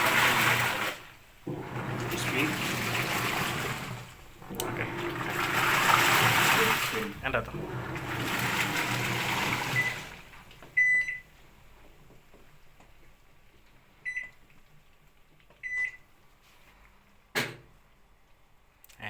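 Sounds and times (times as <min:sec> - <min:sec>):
washing machine running: 0:00.0 - 0:12.0.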